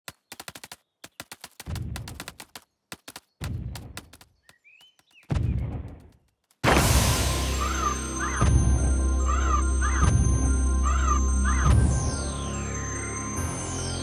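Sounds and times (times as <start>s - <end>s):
rapid sharp clicks: 0.0s - 6.8s
low booms: 6.6s - 9.0s.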